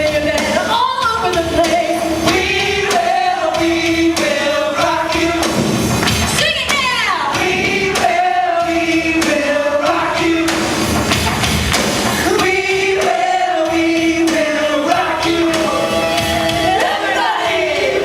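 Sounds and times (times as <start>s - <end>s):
choir singing long held notes: 12.2s - 18.0s.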